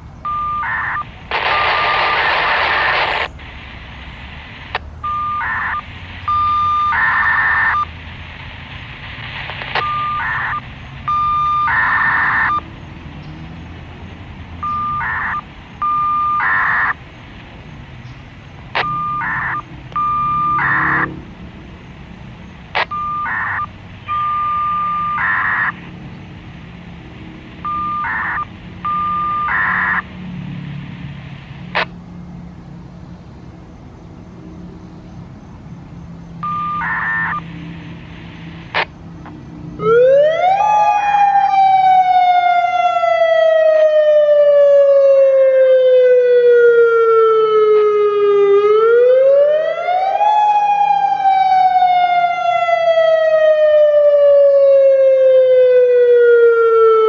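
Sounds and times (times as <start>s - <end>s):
electronic warning siren wailing: 0.2s - 3.4s, 4.6s - 8.0s, 9.4s - 12.7s, 14.5s - 17.0s, 18.7s - 21.2s, 22.7s - 26.0s, 27.5s - 31.0s, 36.4s - 57.0s
short electronic beeps: 0.3s - 2.9s, 5.0s - 8.0s, 9.8s - 12.6s, 14.6s - 16.9s, 18.8s - 21.1s, 22.8s - 25.7s, 27.6s - 30.0s, 36.4s - 37.5s.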